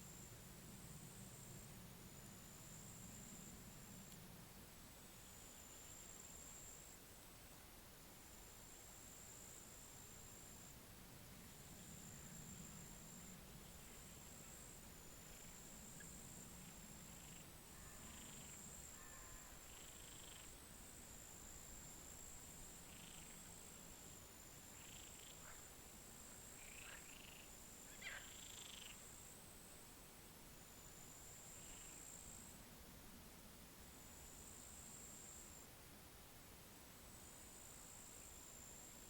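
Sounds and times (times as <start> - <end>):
high insect drone: 0.0 - 7.2, 8.3 - 29.8, 30.6 - 32.6, 37.1 - 39.0
frogs calling: 24.7 - 25.7, 26.4 - 29.1.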